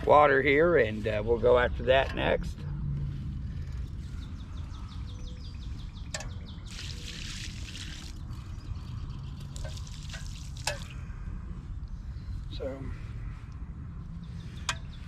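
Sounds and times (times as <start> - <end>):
water poured from a pot: 6.6 - 8.4, 9.4 - 11.0.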